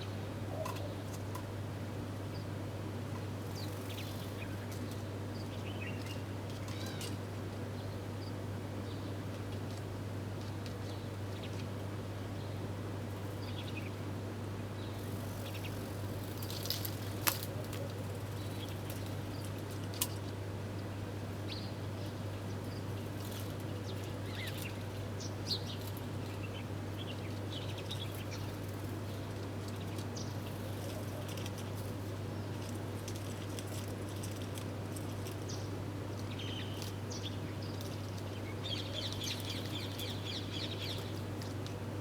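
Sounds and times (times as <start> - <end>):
small birds chirping: 21.5 - 31.4, 35.3 - 41.5.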